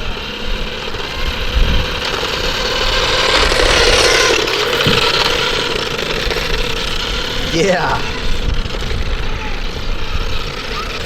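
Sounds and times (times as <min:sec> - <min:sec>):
small electric motor whining: 0:00.0 - 0:11.0
toy car rattling over ground: 0:00.0 - 0:11.0.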